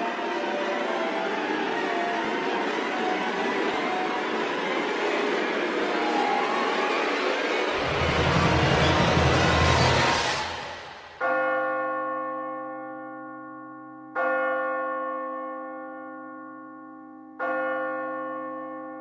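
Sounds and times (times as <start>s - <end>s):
loud rushing swell: 2.9s - 11.3s
deep bell tolling: 7.8s - 14.6s.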